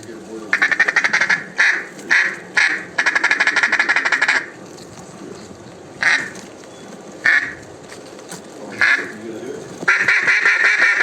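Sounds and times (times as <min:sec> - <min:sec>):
duck call quacks: 0:00.5 - 0:04.6, 0:06.0 - 0:06.4, 0:07.2 - 0:07.6, 0:08.7 - 0:09.2, 0:09.9 - 0:11.0.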